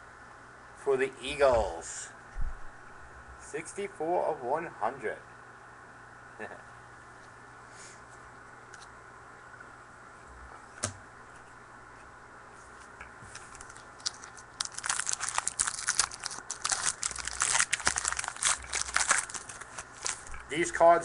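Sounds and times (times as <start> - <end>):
foil wrapper tearing and crinkling: 13.4 - 20.4.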